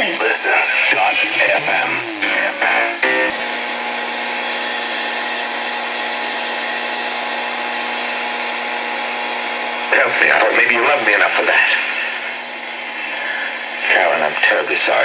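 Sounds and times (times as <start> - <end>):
radio static hiss: 0.0 - 15.0
faint steady tones: 0.3 - 5.9.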